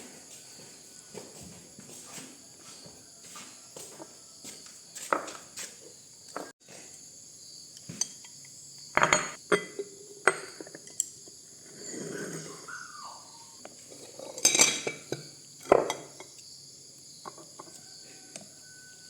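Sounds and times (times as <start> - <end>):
insects chirring: 0.0 - 19.0
sharp knocks and clinks: 7.9 - 11.2.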